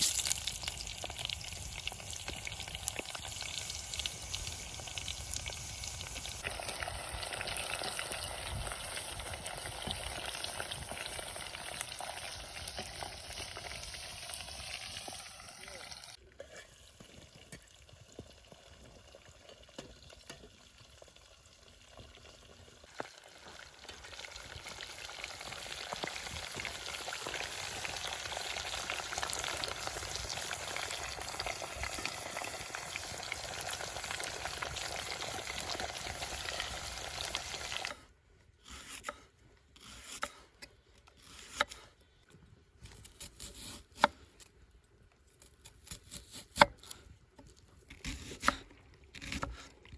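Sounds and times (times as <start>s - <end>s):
food frying in hot oil: 0.0s - 16.2s, 18.2s - 37.9s.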